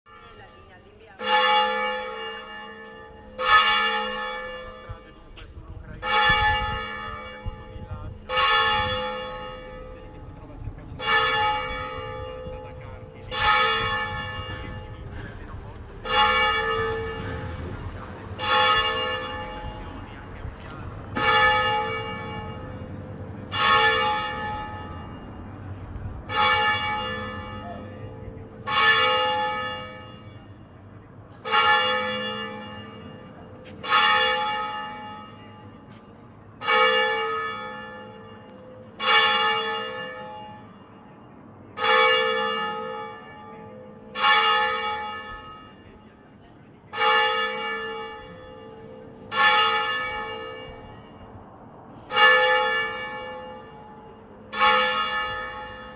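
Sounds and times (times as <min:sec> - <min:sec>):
church bell tolling: 0:00.1 - 0:51.4, 0:52.1 - 0:55.9.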